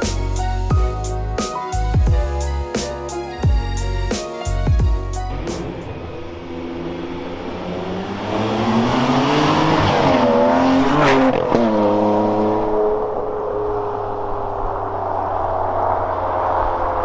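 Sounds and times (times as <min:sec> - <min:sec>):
car engine revving: 0:05.3 - 0:17.0.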